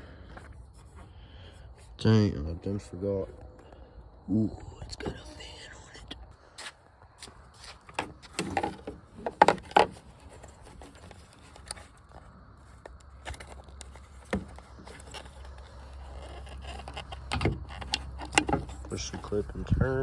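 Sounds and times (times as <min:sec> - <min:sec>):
plastic clicks and knocks: 0:07.9 - 0:11.9, 0:16.7 - 0:18.9.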